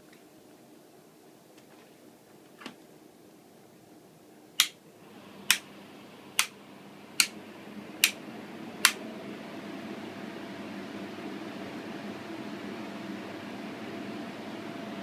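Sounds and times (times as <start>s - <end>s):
ventilation fans whirring: 0.0s - 15.0s
switch clicks: 4.6s - 4.8s, 7.2s - 7.4s.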